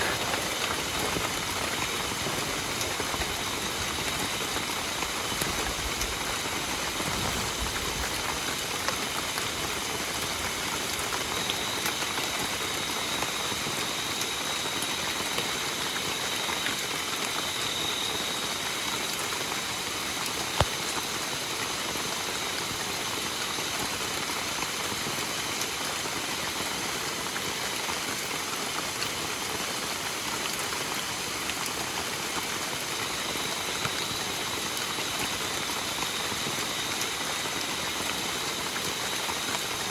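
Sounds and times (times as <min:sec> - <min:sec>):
steady rain falling: 0:00.0 - 0:39.9.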